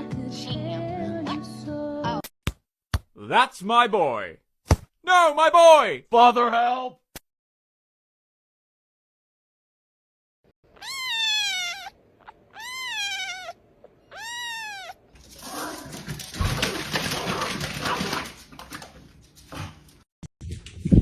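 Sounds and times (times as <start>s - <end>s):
pet crying: 10.7s - 15.1s.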